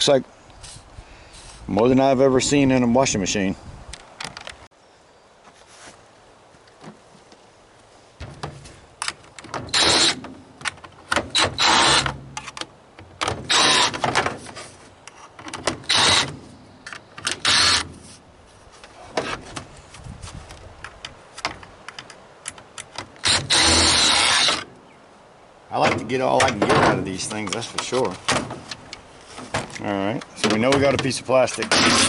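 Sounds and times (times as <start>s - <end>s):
drill motor whining: 23.2s - 24.6s.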